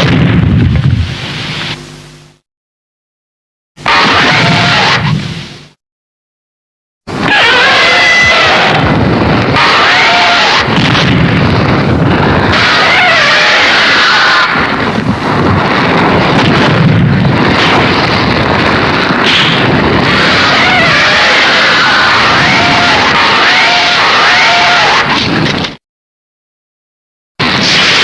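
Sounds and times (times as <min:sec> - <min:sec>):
heavy low rumble: 0:00.0 - 0:02.4, 0:10.6 - 0:12.9, 0:14.5 - 0:21.2
monster roaring: 0:03.8 - 0:05.0, 0:07.2 - 0:10.7, 0:12.1 - 0:14.6, 0:19.5 - 0:25.1
screeching cries: 0:03.8 - 0:05.1, 0:07.2 - 0:10.7, 0:12.5 - 0:14.7, 0:20.0 - 0:25.2.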